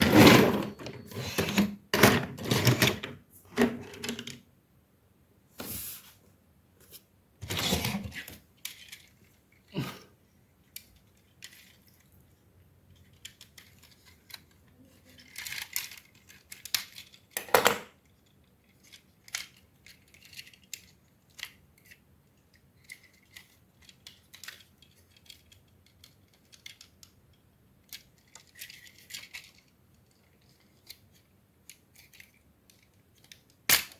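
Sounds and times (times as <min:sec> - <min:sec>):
plastic toy parts clicking: 0:08.6 - 0:09.2, 0:12.9 - 0:33.9.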